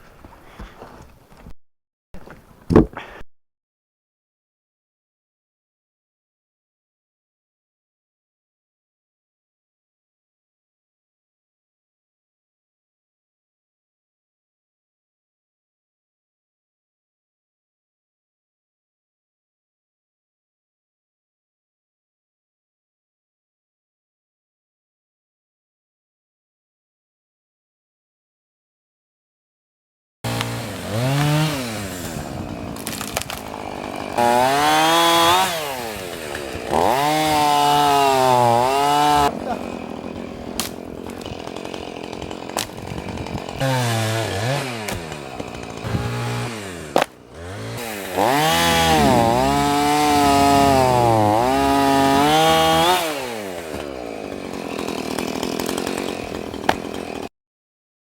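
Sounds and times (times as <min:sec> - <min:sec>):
chainsaw cutting wood: 0:30.2 - 0:57.3.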